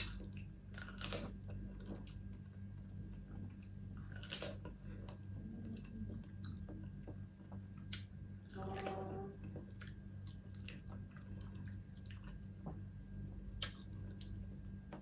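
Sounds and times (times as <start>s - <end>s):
person humming: 8.6s - 9.4s
soft mouth clicks and smacks: 13.6s - 14.4s.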